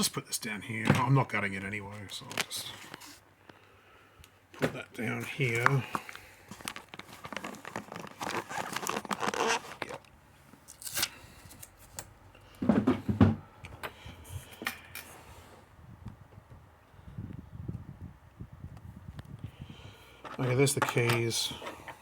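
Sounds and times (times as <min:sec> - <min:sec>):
rustling: 0:05.0 - 0:12.0.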